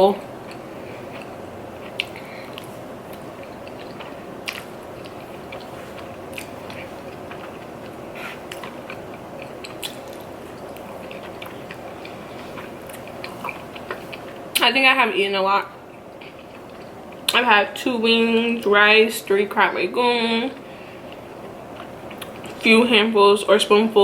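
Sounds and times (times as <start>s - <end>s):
chewing food with wet mouth sounds: 0.4s - 14.8s, 15.6s - 17.4s, 20.6s - 22.7s.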